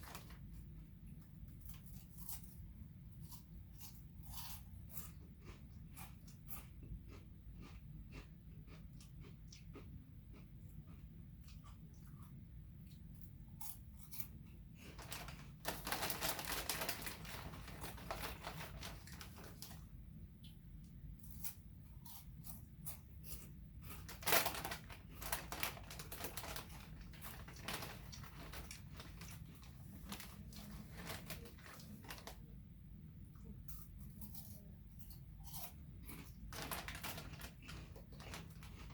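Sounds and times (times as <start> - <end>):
chip bag crinkling: 0.0 - 0.6, 14.8 - 19.9, 23.3 - 32.4, 33.7 - 38.9
person crunching chips: 1.6 - 2.6, 3.2 - 10.4, 21.2 - 32.4, 33.7 - 38.9.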